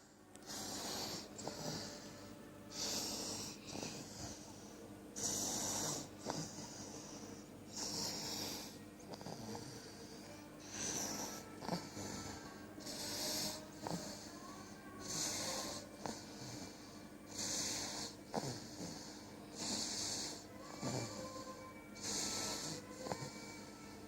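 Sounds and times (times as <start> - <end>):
raspy hissing snoring: 0.0 - 2.1, 2.7 - 23.5.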